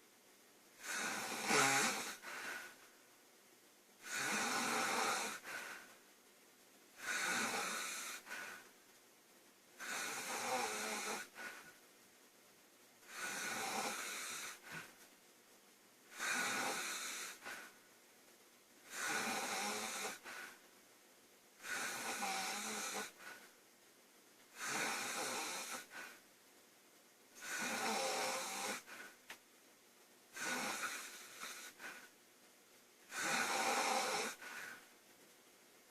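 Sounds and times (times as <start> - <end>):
girl snoring loudly: 0.8 - 2.8, 4.0 - 5.8, 7.0 - 8.6, 9.8 - 11.6, 13.1 - 14.9, 16.1 - 17.7, 18.9 - 20.5, 21.6 - 23.4, 24.6 - 26.1, 27.4 - 29.1, 30.4 - 32.1, 33.1 - 34.8.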